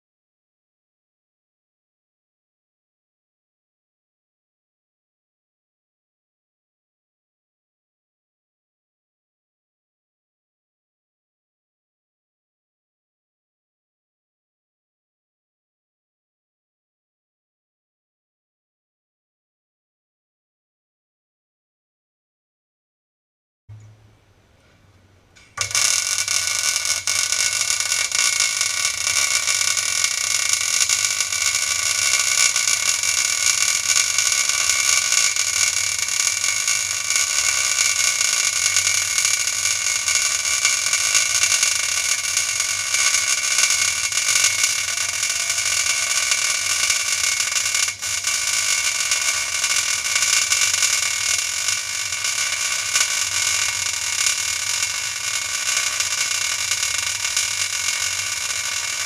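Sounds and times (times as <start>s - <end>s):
plasma cutter arc hissing: 25.6s - 58.9s.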